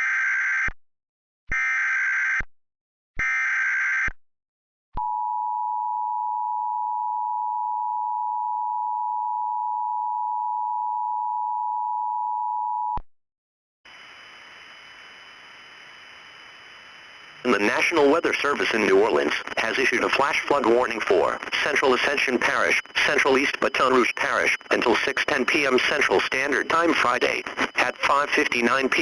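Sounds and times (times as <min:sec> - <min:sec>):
screeching digital data bursts: 0:17.5 - 0:29.0
two-tone attention signal: 0:21.6 - 0:29.0.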